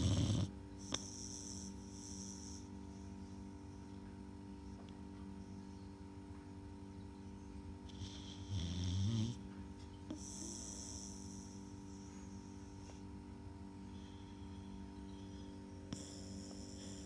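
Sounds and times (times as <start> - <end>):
dog snoring: 0.0 - 3.4, 7.9 - 9.4, 10.1 - 13.0, 15.1 - 17.0
electrical hum: 0.0 - 17.0
soft breathing: 13.8 - 17.0.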